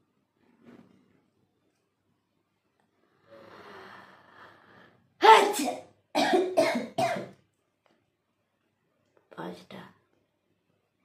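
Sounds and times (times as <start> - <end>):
person sneezing: 5.2 - 7.2.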